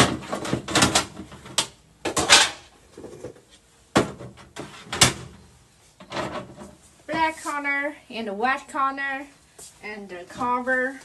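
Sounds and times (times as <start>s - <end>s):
plastic boxes clacking and knocking: 0.0s - 5.4s.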